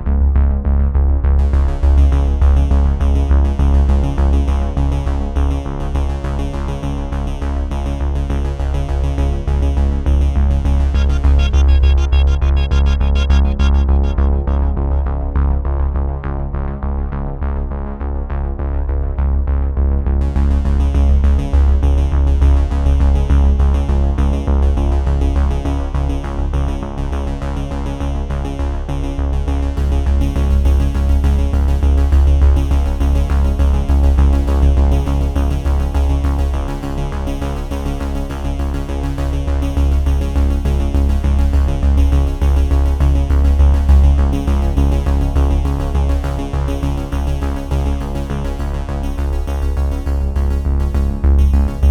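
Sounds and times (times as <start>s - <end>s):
electronic music with synthesizer: 10.0s - 16.0s, 49.2s - 51.9s.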